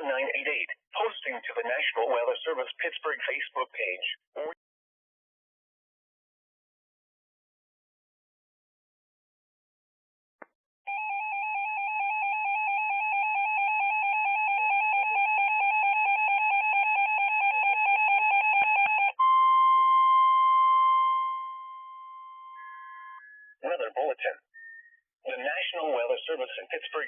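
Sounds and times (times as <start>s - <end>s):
warbling electronic alert tone: 18.6s - 23.6s.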